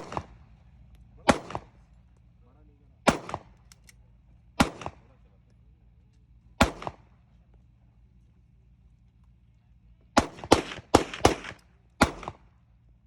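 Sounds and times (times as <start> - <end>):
gunshots: 0.0 - 0.4, 1.2 - 1.8, 3.0 - 3.6, 4.6 - 5.1, 6.6 - 7.1, 10.2 - 12.5.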